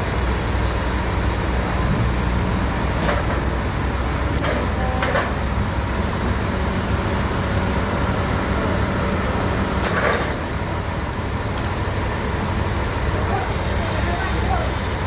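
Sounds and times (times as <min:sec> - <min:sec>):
short clatter: 0:09.8 - 0:11.8
high hiss: 0:13.3 - 0:15.0.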